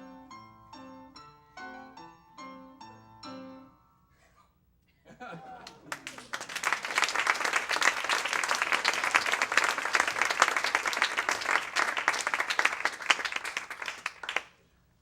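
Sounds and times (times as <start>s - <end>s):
audience applauding: 5.5s - 14.6s.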